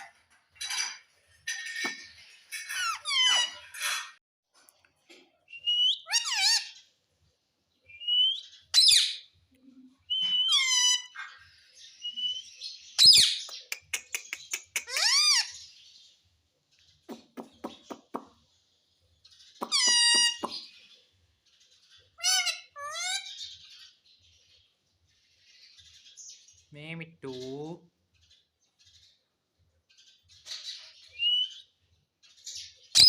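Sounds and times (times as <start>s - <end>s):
parrot squawking: 1.6s - 4.1s, 5.6s - 6.8s, 8.2s - 9.3s, 10.1s - 11.4s, 14.3s - 15.7s, 19.6s - 20.7s, 22.2s - 23.4s.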